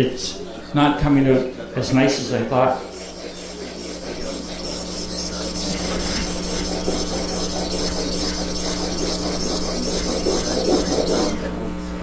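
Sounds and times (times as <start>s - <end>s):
blade scraping on water stone: 2.7s - 11.4s.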